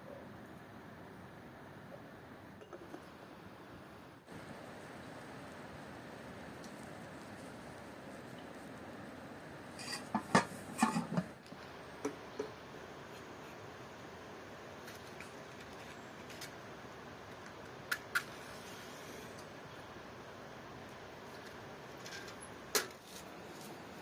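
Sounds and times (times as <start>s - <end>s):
faint steady background noise: 0.0s - 24.0s
dishes and utensils clinking: 9.8s - 11.3s.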